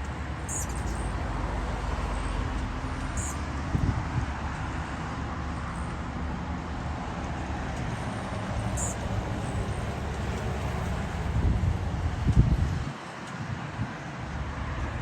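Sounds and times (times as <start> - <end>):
wind buffeting microphone: 3.6 - 4.5, 8.3 - 14.0.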